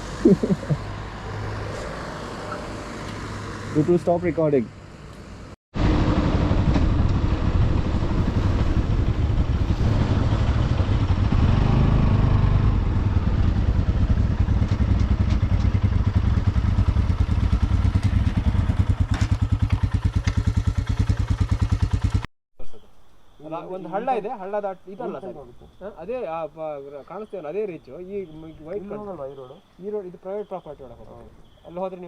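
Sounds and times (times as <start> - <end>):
motorcycle engine running: 5.8 - 22.3.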